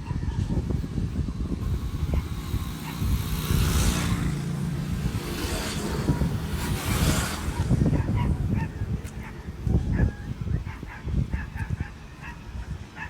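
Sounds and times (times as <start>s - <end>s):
vehicle engines humming: 0.0s - 12.3s
vehicles passing hiss: 0.7s - 9.7s.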